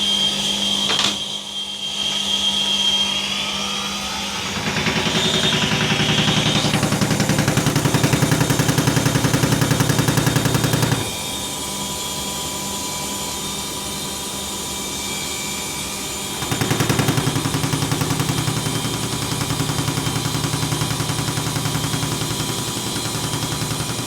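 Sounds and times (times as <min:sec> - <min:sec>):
washing machine spinning: 0:04.3 - 0:11.6, 0:16.2 - 0:24.0.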